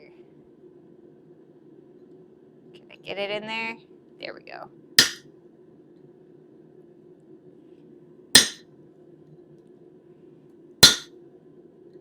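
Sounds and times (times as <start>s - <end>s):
hammer striking steel punch: 5.0s - 5.2s, 8.4s - 8.6s, 10.8s - 11.1s.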